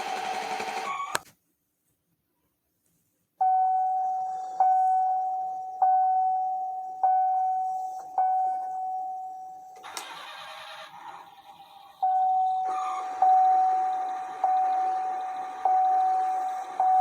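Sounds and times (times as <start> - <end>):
recorded engine running: 0.0 - 1.2, 9.8 - 17.0
recorded engine starting: 0.0 - 1.2, 9.8 - 17.0
single-tone warning chime: 3.4 - 9.8, 12.0 - 17.0.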